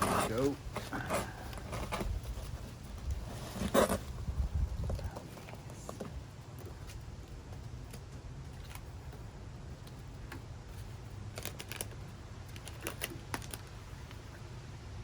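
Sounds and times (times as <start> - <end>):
packaging crinkling: 10.7 - 14.2.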